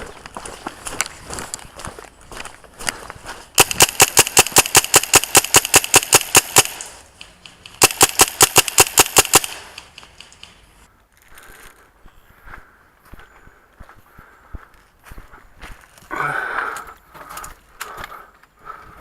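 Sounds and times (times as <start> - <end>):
airsoft rifle automatic fire: 3.6 - 7.0, 7.8 - 9.8.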